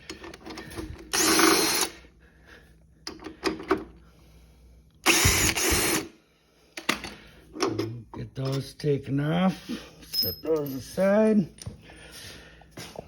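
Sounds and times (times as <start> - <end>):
power tool running: 1.1 - 1.9, 5.0 - 6.1.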